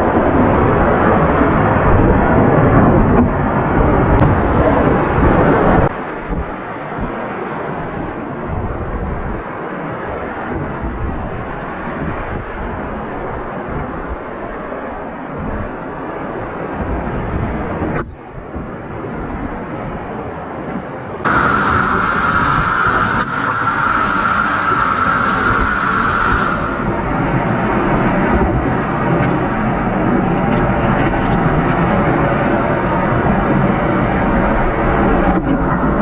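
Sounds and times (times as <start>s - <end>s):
creek rushing over rocks: 21.2s - 27.2s.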